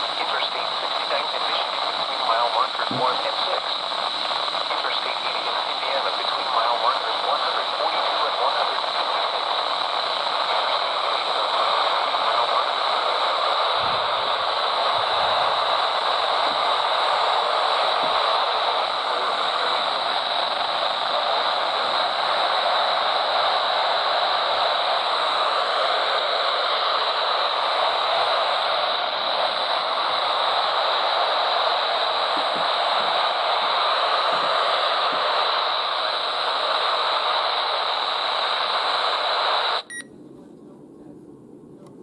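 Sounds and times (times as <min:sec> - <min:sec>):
radio static hiss: 0:00.0 - 0:41.2.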